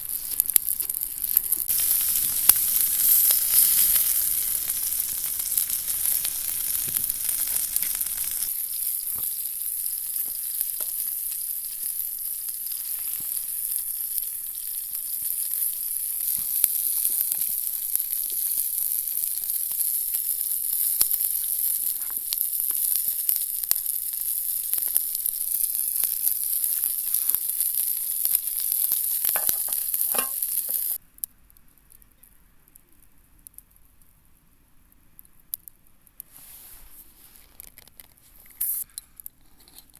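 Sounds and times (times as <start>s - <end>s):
food sizzling in a pan: 0.0s - 31.0s, 38.6s - 38.9s
small pops of frying: 0.0s - 31.3s.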